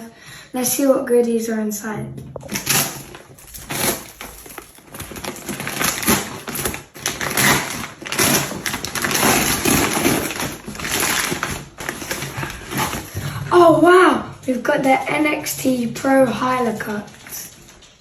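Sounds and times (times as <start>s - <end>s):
packaging crinkling and tearing: 2.4s - 13.4s.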